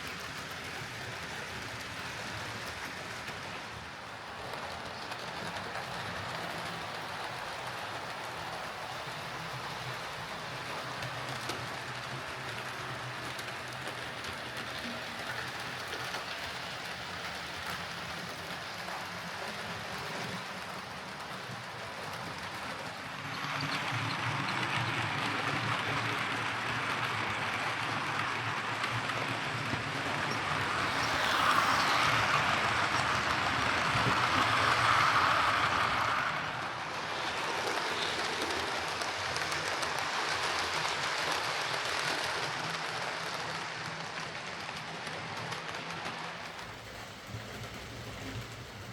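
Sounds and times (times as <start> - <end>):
model train motor whirring: 25.4 - 48.9.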